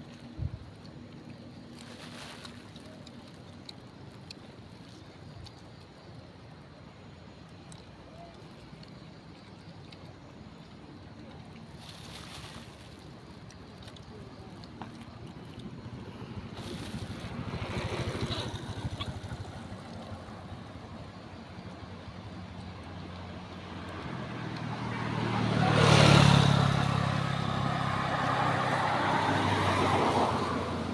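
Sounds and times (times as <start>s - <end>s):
vehicle engine passing: 22.8s - 30.9s.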